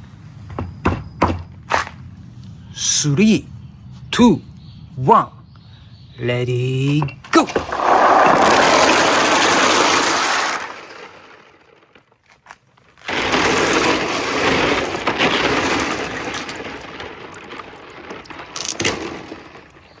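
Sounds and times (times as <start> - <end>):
marbles clacking: 7.0 - 12.0, 13.0 - 20.0
marbles rolling on rails: 7.3 - 20.0.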